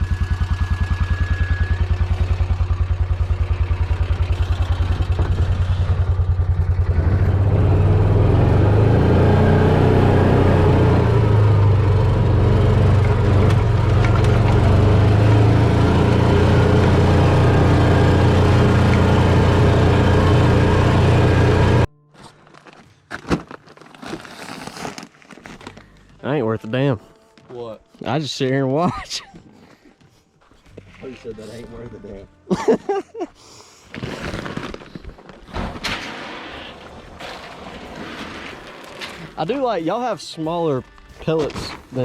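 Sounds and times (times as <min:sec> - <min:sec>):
engine idling and revving: 0:00.0 - 0:21.9.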